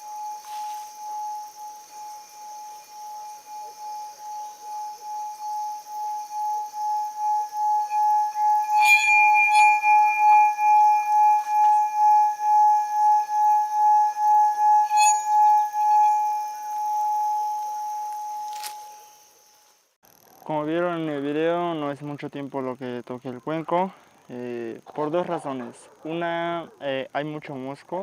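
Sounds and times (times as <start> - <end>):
singing bowl ringing tone: 0.0 - 19.3.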